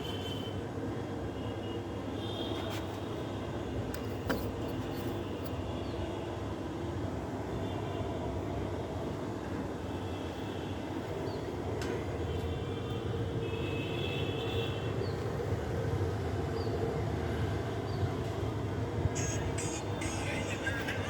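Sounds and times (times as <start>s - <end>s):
air conditioner hum: 18.5s - 21.0s.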